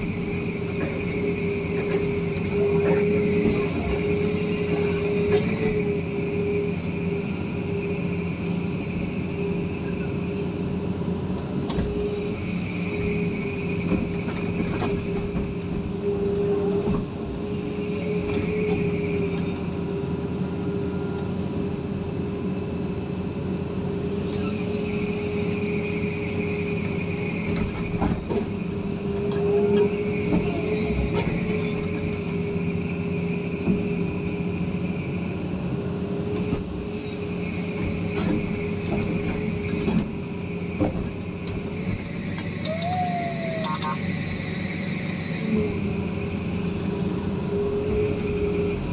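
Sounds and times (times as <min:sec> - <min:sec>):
high whine: 0:41.8 - 0:46.8.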